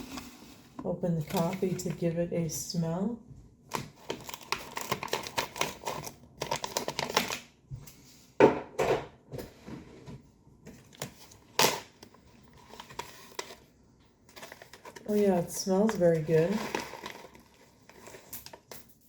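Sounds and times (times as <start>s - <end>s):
packaging snapping: 3.7s - 7.5s
coffee bag rustling: 12.1s - 13.7s, 14.3s - 18.8s.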